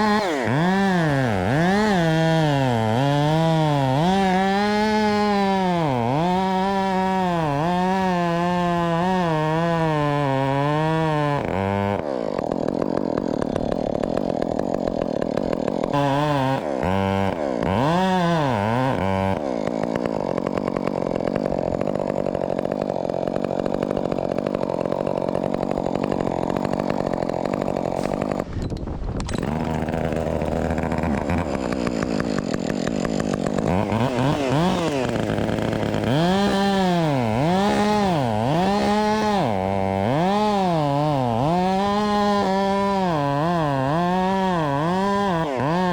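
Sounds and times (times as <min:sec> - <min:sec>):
chainsaw revving: 0:00.0 - 0:45.9.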